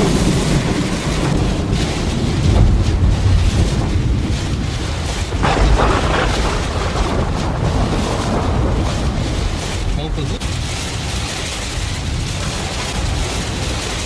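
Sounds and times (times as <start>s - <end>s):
storm wind on microphone: 0.0s - 14.0s.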